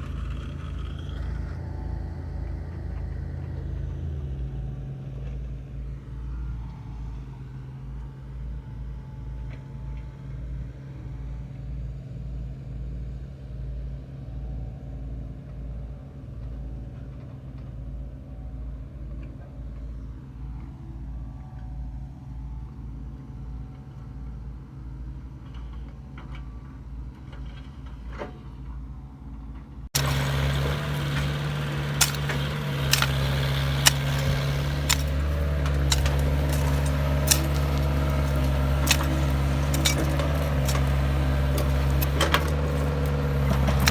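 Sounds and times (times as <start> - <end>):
machine engine throbbing: 30.0 - 43.9
sharp metallic clanks: 30.0 - 43.9.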